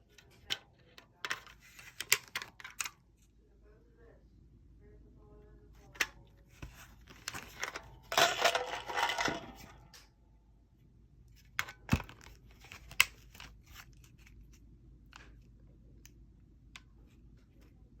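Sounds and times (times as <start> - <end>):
magazine scraping and rattling: 0.2 - 3.0, 6.6 - 10.0.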